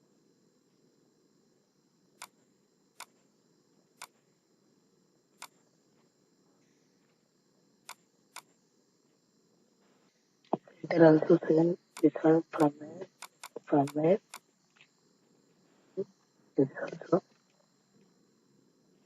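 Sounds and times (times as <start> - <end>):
faint background hiss: 0.0 - 19.0
computer mouse clicks: 2.2 - 2.4, 3.0 - 3.2, 4.0 - 4.2, 5.4 - 5.6, 7.8 - 8.5, 11.9 - 14.9.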